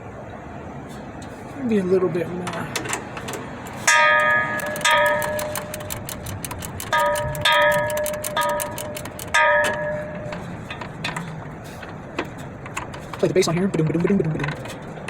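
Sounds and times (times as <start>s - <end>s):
sharp metallic rings: 3.8s - 10.8s
ratchet wrench clicking: 4.2s - 11.2s.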